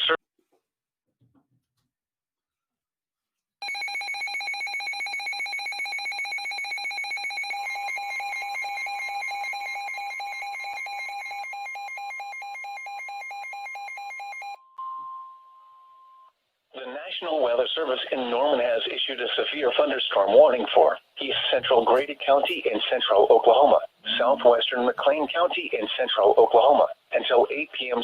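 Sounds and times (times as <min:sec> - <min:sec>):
steady alarm tone: 0:03.6 - 0:14.8
rapid pulsed alarm beeps: 0:03.6 - 0:15.1.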